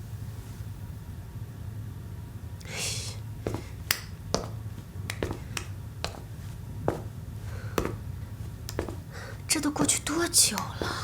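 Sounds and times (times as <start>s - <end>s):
low steady hum: 0.0s - 11.0s
footsteps on hard floor: 3.4s - 11.0s.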